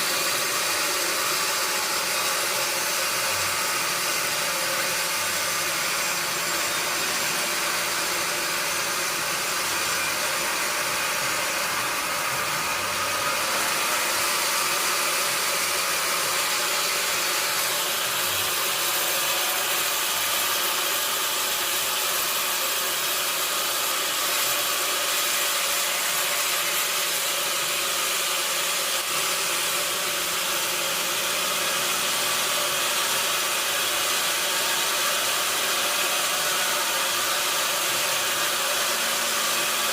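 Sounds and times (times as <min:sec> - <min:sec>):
log saw cutting: 0:00.0 - 0:39.9.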